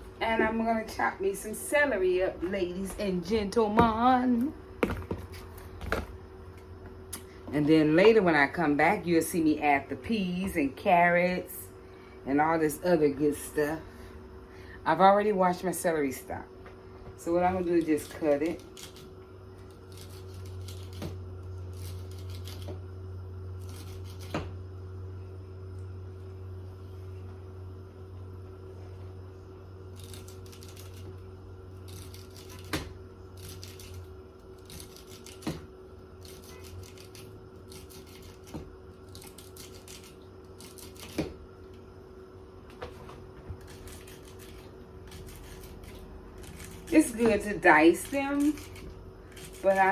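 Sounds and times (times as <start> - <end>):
knife slicing celery: 43.6 - 49.9.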